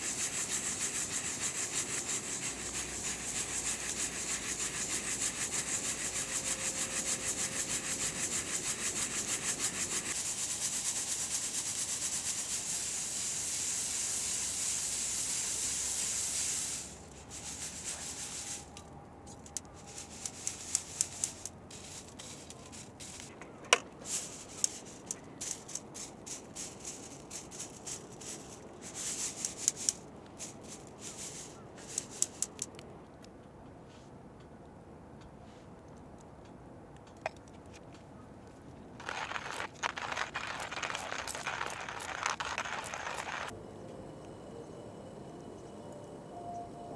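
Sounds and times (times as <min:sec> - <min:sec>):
rapid rubbing or rasping: 0:00.0 - 0:12.9, 0:14.4 - 0:18.8, 0:19.6 - 0:23.3, 0:39.0 - 0:43.5.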